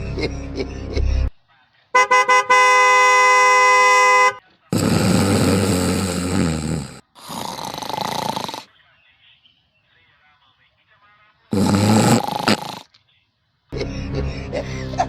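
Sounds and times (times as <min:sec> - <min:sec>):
vehicle horn: 0:02.0 - 0:04.4
loud snoring: 0:04.7 - 0:08.7, 0:11.5 - 0:12.9.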